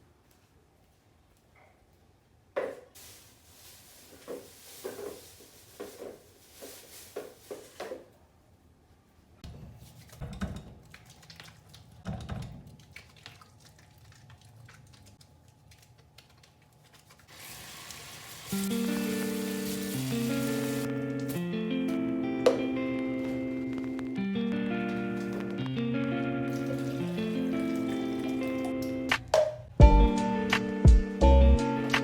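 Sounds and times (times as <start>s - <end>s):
household objects knocking and clattering: 10.2s - 10.9s, 12.0s - 12.7s.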